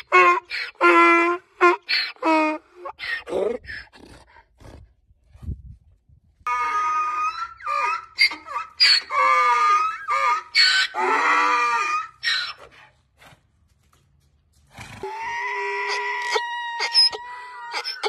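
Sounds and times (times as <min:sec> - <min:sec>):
donkey braying: 0:00.0 - 0:04.0, 0:06.5 - 0:12.8, 0:15.0 - 0:18.0.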